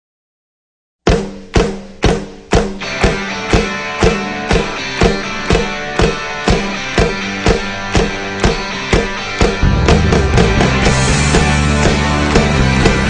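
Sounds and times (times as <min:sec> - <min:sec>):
drums beating: 0:01.1 - 0:13.0
guitar: 0:02.5 - 0:13.0
rock music: 0:02.7 - 0:13.0.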